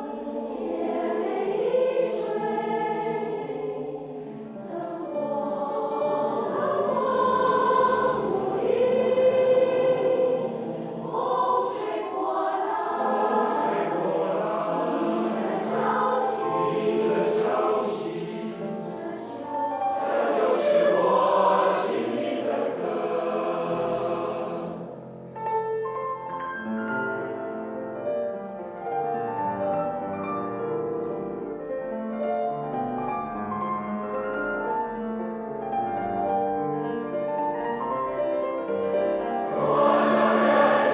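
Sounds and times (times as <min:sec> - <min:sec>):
choir singing: 0:00.0 - 0:25.1, 0:38.5 - 0:40.9.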